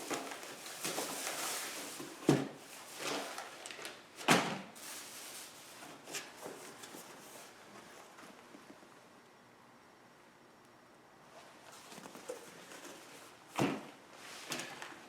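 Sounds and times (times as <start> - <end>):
rustling and light clatter: 4.8 - 8.9, 11.3 - 15.0.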